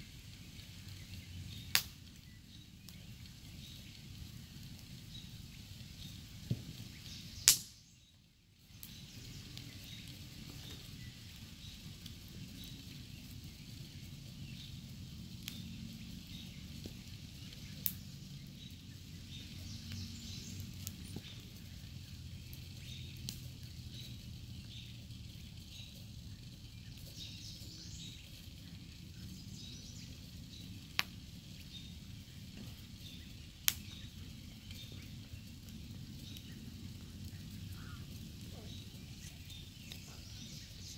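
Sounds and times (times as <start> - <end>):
campfire crackling: 0.0 - 40.9
outdoor background noise: 0.0 - 40.9
loud fire pop: 7.4 - 7.8.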